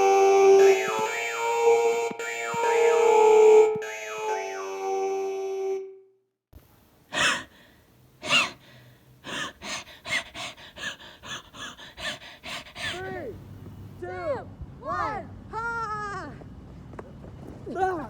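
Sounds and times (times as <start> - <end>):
keyboard music: 0.0 - 6.0
person wheezing: 7.1 - 13.3.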